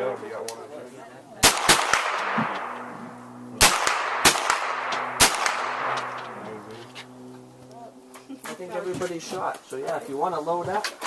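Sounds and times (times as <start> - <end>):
loud gunshots with echo: 1.4 - 2.8, 3.6 - 6.5
faint gunshots: 1.4 - 3.0, 3.6 - 6.9.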